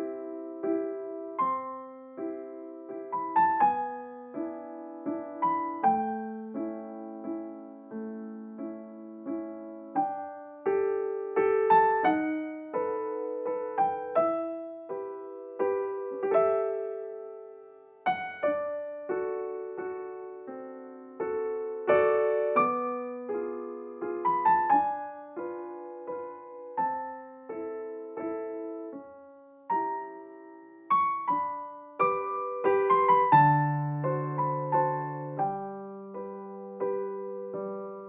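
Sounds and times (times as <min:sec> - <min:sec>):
soft solo piano: 0:00.0 - 0:38.0.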